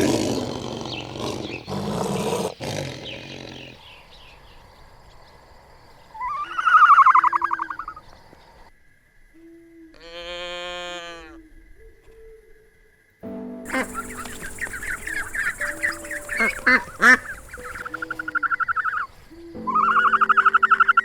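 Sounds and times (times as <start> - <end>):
high quavering animal call: 6.0 - 8.7, 9.3 - 12.6, 13.7 - 21.0
rough noisy animal call: 6.1 - 8.1, 13.7 - 21.0.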